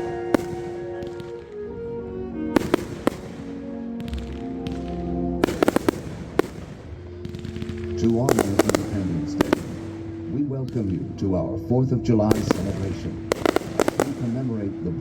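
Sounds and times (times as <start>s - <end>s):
music with held notes: 0.0s - 15.0s
firework shells bursting: 2.6s - 11.0s, 12.3s - 14.7s.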